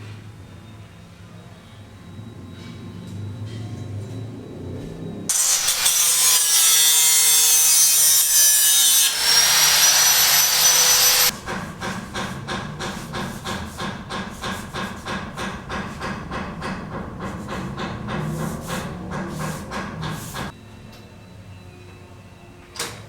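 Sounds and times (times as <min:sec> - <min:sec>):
saw cutting: 0:05.3 - 0:12.0
rhythmic saw strokes: 0:05.3 - 0:15.5.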